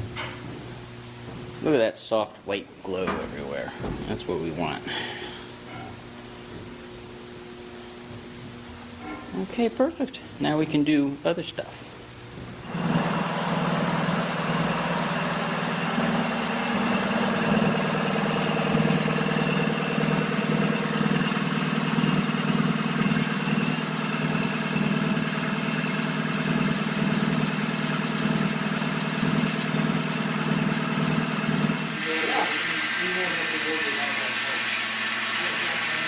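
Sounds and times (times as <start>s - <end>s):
machinery humming and hissing: 12.6s - 36.0s.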